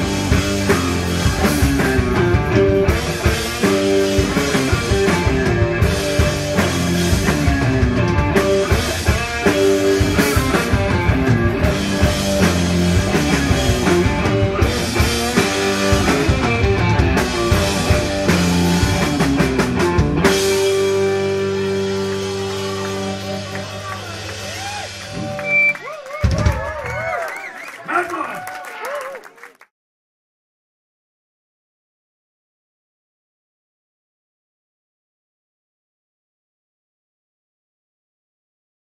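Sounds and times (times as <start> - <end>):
electric guitar: 0.0 - 27.1
bass guitar: 0.0 - 27.2
drum kit: 0.0 - 27.2.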